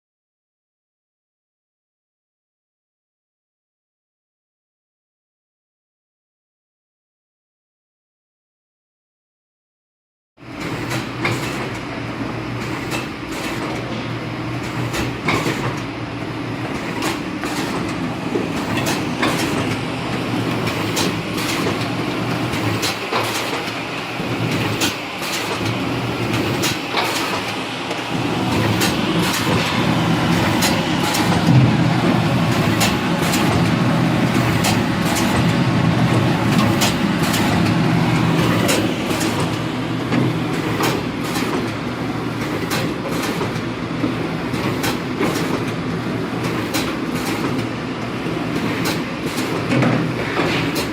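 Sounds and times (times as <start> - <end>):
machine clicks and clacks: 10.5 - 11.9, 12.5 - 15.9, 16.6 - 50.9
shrink-wrapping machine humming: 12.5 - 50.9.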